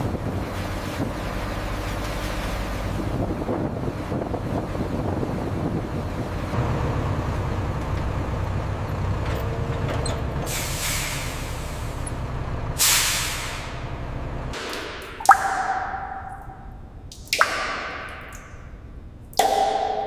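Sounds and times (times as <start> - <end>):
short sharp hisses: 10.5 - 11.7, 12.8 - 13.7.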